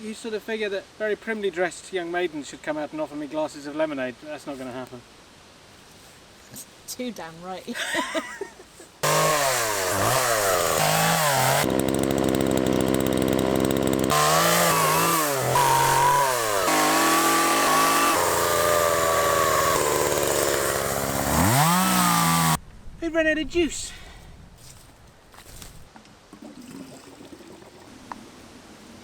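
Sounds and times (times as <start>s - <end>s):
chainsaw cutting wood: 9.0s - 22.6s.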